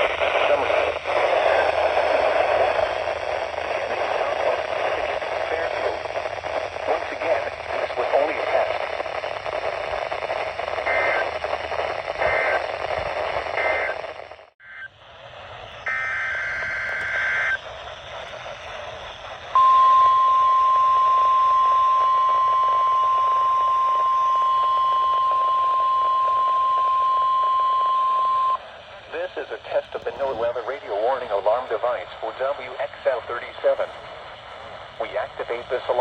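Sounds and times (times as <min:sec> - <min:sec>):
radio hiss: 0:00.0 - 0:36.0
warning alarm tone: 0:15.9 - 0:17.6.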